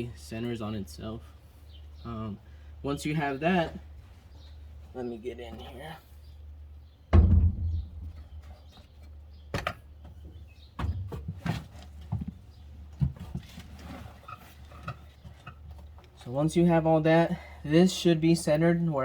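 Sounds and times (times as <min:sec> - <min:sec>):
heavy thump: 0:07.1 - 0:08.5.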